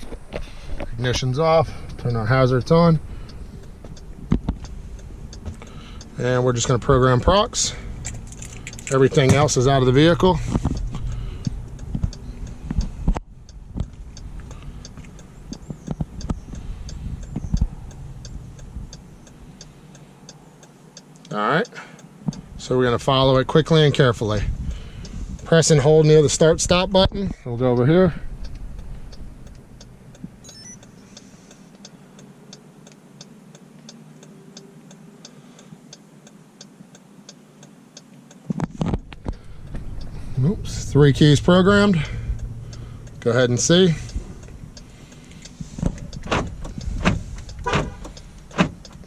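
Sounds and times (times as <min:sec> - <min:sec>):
hazard flasher ticking: 0:01.9 - 0:21.3, 0:28.3 - 0:38.4, 0:39.0 - 0:49.0.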